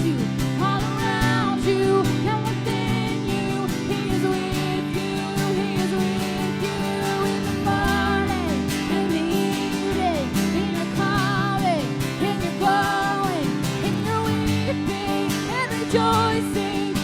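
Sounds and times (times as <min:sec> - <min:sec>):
acoustic guitar chords: 0:00.0 - 0:17.0
person singing: 0:00.0 - 0:17.0.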